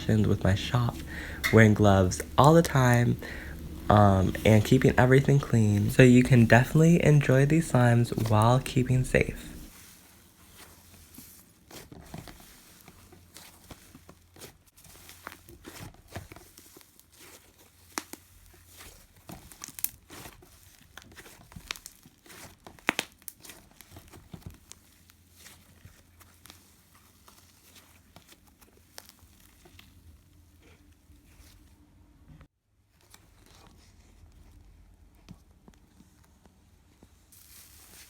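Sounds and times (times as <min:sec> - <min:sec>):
slime crackling and popping: 0:16.6 - 0:24.8.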